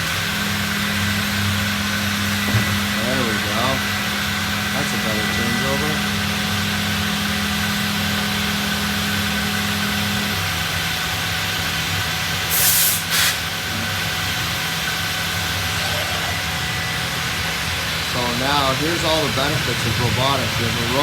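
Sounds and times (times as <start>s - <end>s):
sanding machinery humming: 0.0s - 21.0s
short loud hisses: 12.5s - 13.5s.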